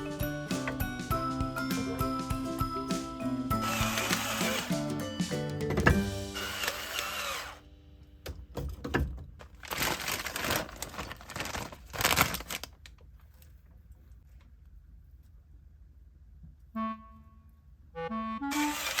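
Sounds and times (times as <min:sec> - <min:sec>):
keyboard background music: 0:00.0 - 0:07.5, 0:18.0 - 0:19.0.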